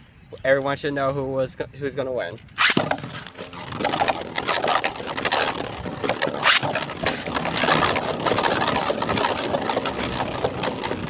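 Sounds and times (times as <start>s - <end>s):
spinning tops whirring and scraping: 2.5s - 11.0s
spinning tops clacking together: 2.6s - 11.0s.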